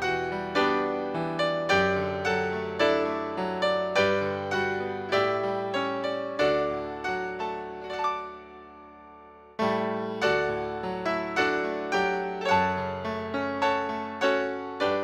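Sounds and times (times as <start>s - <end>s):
solo piano music: 0.0s - 15.0s.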